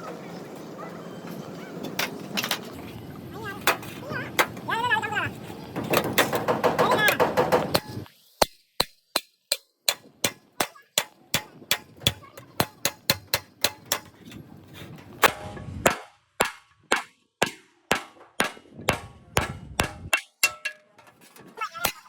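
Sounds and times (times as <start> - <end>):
hammer striking metal: 5.8 - 14.1, 15.2 - 21.0.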